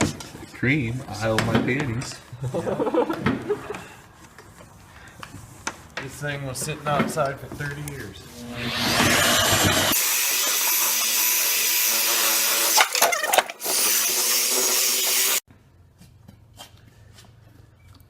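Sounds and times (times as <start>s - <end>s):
power buffer polishing: 8.4s - 15.4s.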